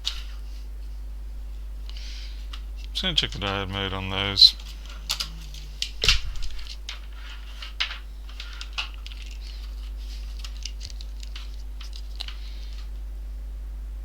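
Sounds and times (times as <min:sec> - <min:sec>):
steady low hum: 0:00.0 - 0:14.0
multimeter probes clicking and tapping: 0:04.6 - 0:12.9.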